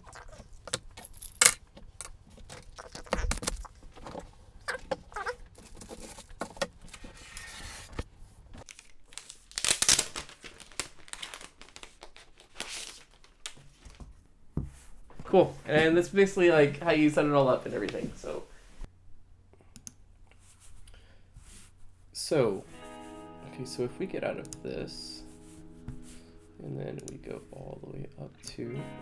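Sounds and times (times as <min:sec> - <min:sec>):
rustling and crinkling: 0:00.0 - 0:16.2, 0:16.8 - 0:18.9
clicks and knocks of handling: 0:00.1 - 0:07.6.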